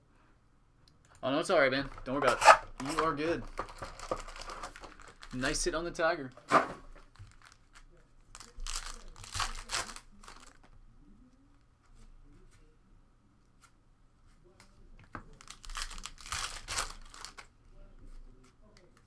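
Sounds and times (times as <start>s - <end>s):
foil wrapper tearing and crinkling: 7.1s - 7.8s, 8.4s - 10.7s, 15.4s - 17.5s.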